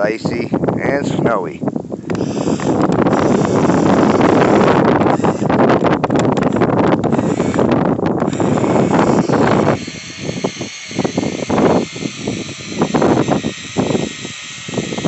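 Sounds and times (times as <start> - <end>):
wind buffeting microphone: 0.0 - 15.0
faint high motor whine: 7.0 - 15.0.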